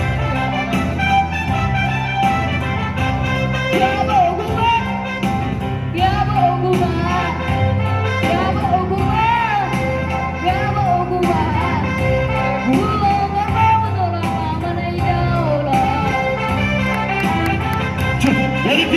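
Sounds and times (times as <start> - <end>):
instrumental accompaniment: 0.0 - 18.9
person singing: 18.1 - 18.9.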